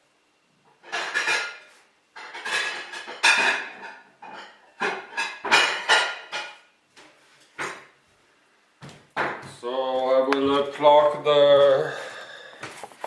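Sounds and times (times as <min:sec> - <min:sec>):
plates clinking and clattering: 0:00.8 - 0:06.7.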